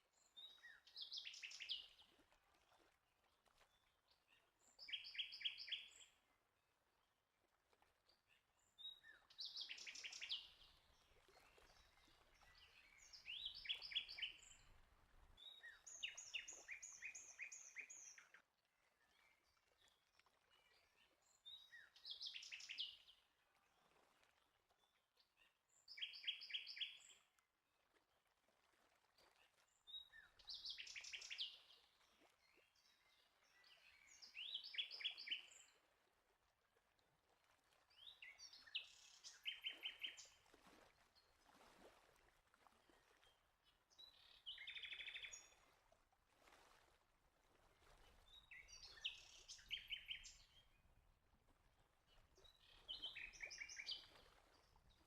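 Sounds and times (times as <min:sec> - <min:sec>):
songbird singing: 0:44.0 - 0:45.5, 0:48.4 - 0:50.7, 0:52.4 - 0:54.2.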